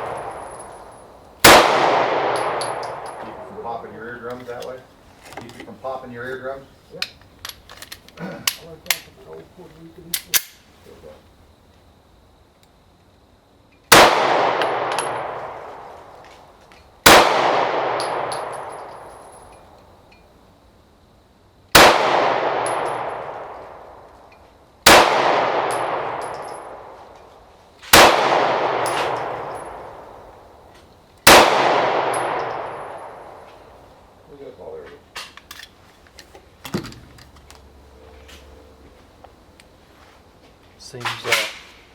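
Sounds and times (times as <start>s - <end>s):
pistol shots ringing: 0.0s - 3.8s, 13.9s - 15.9s, 17.0s - 19.5s, 21.7s - 24.0s, 24.8s - 27.0s, 27.9s - 30.4s, 31.2s - 33.5s.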